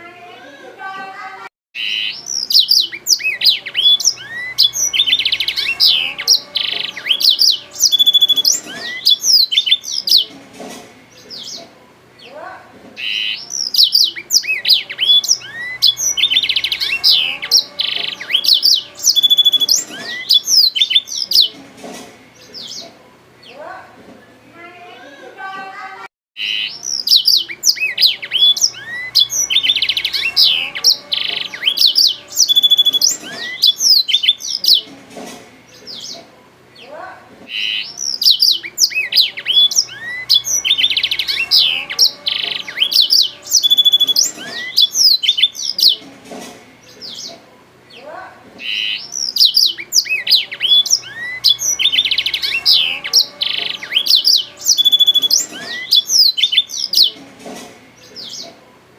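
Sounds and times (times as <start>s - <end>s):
bird singing twittering trills: 1.8s - 10.3s, 13.0s - 21.6s, 26.4s - 34.9s, 37.5s - 46.0s, 48.6s - 57.2s.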